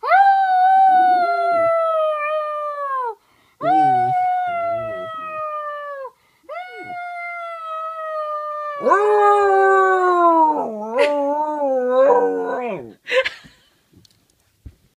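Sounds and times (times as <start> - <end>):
dog howling: 6.7 - 12.9.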